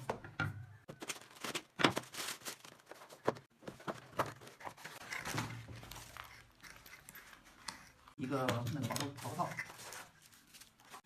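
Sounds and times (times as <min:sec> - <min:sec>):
packaging rustling and crinkling: 0:00.9 - 0:06.8, 0:09.0 - 0:11.0.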